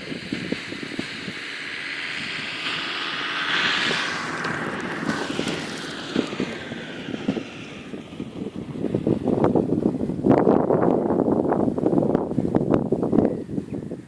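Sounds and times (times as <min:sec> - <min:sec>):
glider whooshing past: 0:00.0 - 0:10.8
wind buffeting microphone: 0:00.0 - 0:14.0.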